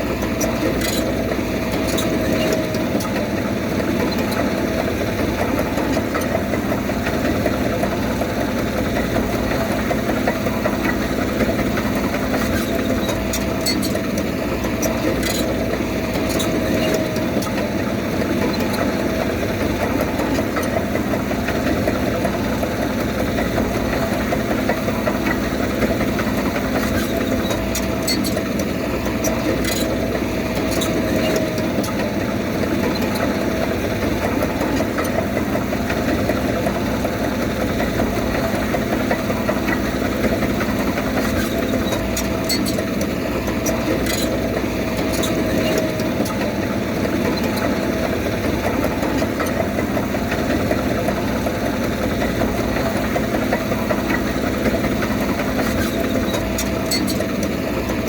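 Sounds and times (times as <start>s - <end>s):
bulldozer diesel engine running: 0.0s - 58.0s.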